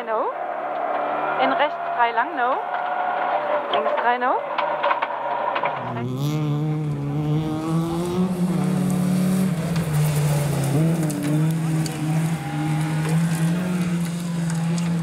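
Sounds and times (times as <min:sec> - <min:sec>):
rally car engine working hard: 0:04.7 - 0:15.0.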